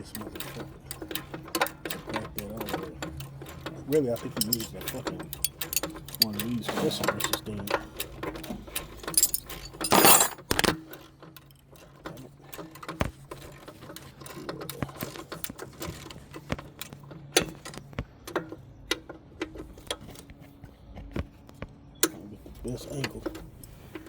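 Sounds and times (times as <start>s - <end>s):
metal hand tools clinking: 4.1s - 6.5s, 9.0s - 10.7s.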